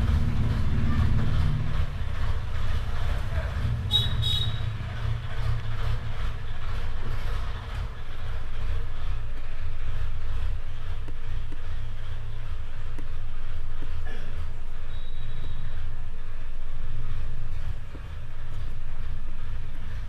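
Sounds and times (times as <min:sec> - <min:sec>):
steady low rumble: 0:00.0 - 0:20.0.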